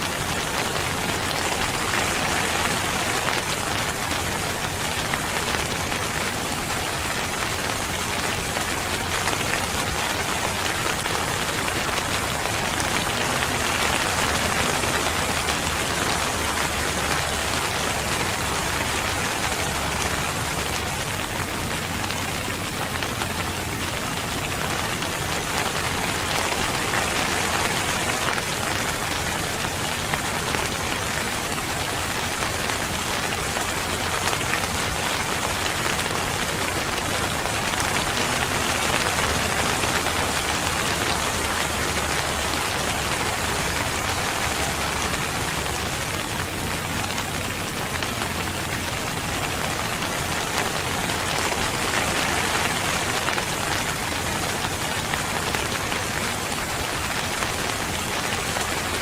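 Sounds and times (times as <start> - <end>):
steady rain falling: 0.0 - 59.0.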